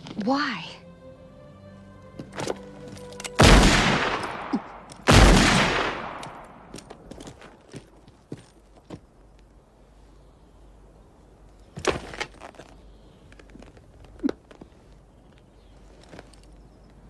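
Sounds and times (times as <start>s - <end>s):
loud gunshots echoing: 3.4s - 7.1s.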